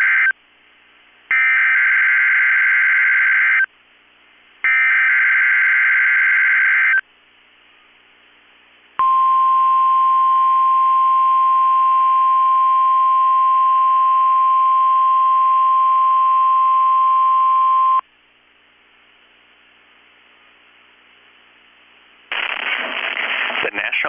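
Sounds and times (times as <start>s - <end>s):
faint radio hiss: 18.0s - 24.0s.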